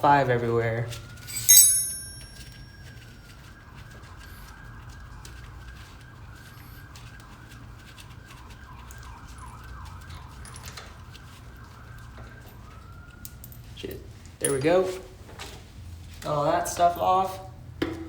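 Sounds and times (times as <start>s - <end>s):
faint emergency vehicle siren: 0.0s - 18.0s.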